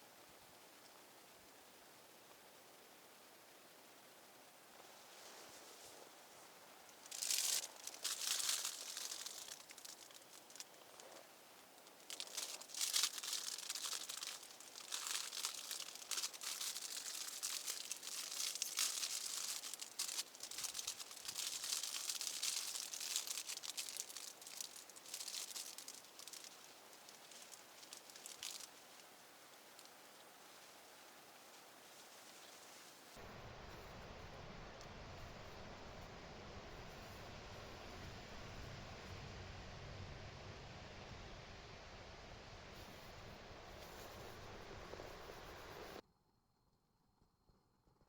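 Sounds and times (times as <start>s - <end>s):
fabric or plastic crinkling: 7.0s - 30.7s.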